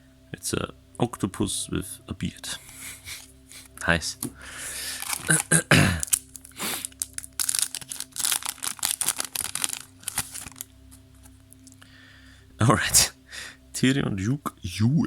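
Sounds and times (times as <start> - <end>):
cards rustling: 2.6 - 11.8
foil wrapper tearing and crackling: 4.7 - 11.8.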